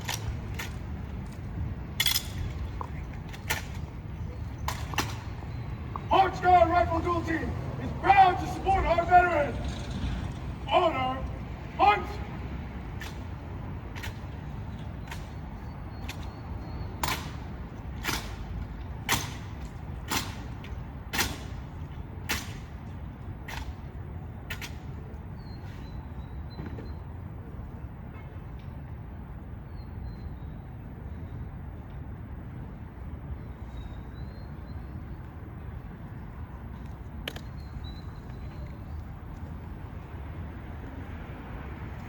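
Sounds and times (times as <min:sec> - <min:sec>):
low outdoor rumble: 0:00.0 - 0:15.7.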